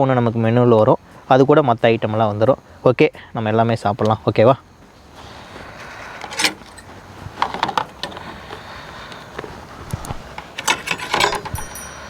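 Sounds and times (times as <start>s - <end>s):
steady background hiss: 0.0s - 12.0s
dishes and utensils clinking: 10.6s - 12.0s.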